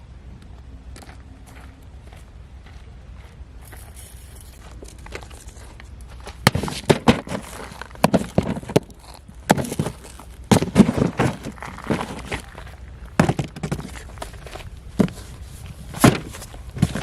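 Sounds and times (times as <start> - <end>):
rustling handling noise: 3.6 - 17.0.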